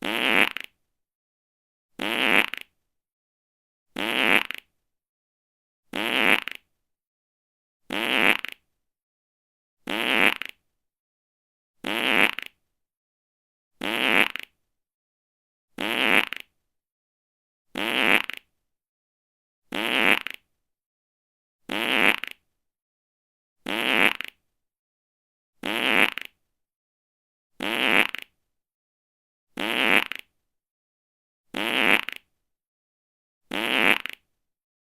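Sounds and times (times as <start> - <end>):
short buzzy fart: 0.0 - 0.8, 2.0 - 2.8, 4.0 - 4.7, 5.9 - 6.7, 7.9 - 8.6, 9.8 - 10.6, 11.8 - 12.6, 13.8 - 14.6, 15.8 - 16.5, 17.7 - 18.5, 19.7 - 20.5, 21.7 - 22.4, 23.6 - 24.4, 25.6 - 26.4, 27.6 - 28.4, 29.5 - 30.3, 31.5 - 32.3, 33.5 - 34.3.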